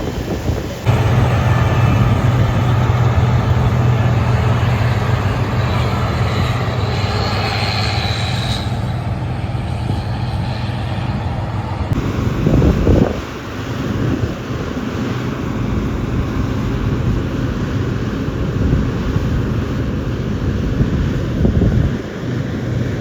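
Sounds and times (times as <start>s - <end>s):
diesel farm machine running: 0.1s - 23.0s.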